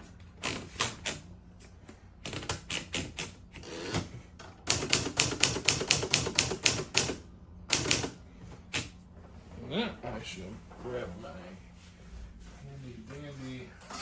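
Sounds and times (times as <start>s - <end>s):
typewriter keystrokes: 4.7s - 8.9s.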